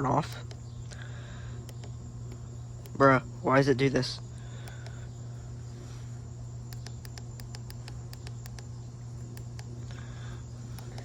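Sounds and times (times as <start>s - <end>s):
electrical hum with hiss: 0.0s - 11.0s
quick sharp clicks: 6.7s - 8.7s.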